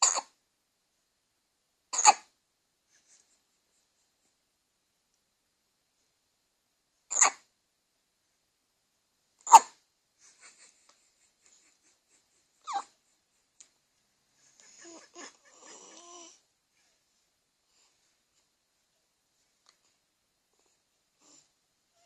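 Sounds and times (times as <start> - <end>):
sharp loud hiccups: 0.0 - 0.4, 2.0 - 2.3, 7.1 - 7.5, 9.5 - 9.8
faint soft sounds: 0.4 - 22.0.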